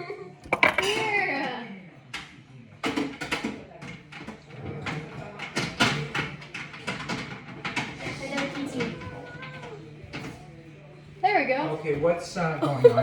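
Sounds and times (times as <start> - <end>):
kitchen items clicking and knocking: 0.4 - 9.1.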